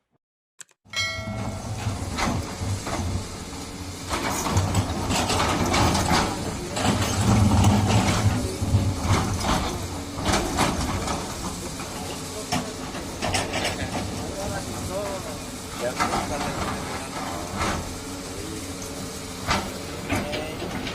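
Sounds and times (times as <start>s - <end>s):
metal clanks and knocks: 1.0s - 15.0s
excavator diesel engine under load: 1.0s - 20.9s.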